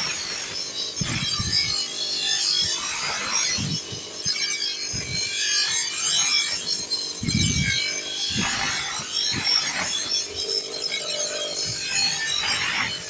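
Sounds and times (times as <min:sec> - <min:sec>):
steel being filed: 0:00.0 - 0:13.0.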